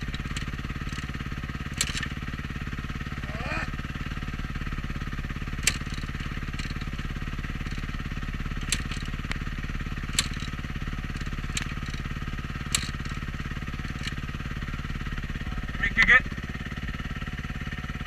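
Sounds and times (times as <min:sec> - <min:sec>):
dirt bike engine idling: 0:00.0 - 0:18.0
sharp clicks or knocks: 0:01.7 - 0:02.2, 0:05.6 - 0:07.0, 0:08.6 - 0:09.4, 0:10.1 - 0:13.2.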